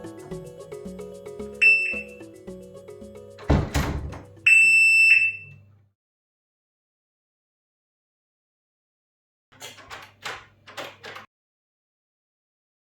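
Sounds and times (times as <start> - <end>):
rhythmic backing music: 0.0 - 4.5
shrill alarm siren beep: 1.6 - 2.2, 4.4 - 5.6.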